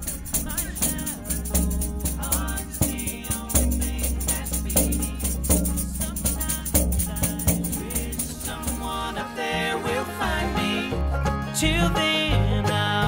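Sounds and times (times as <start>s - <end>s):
background music with beat: 0.0s - 9.2s.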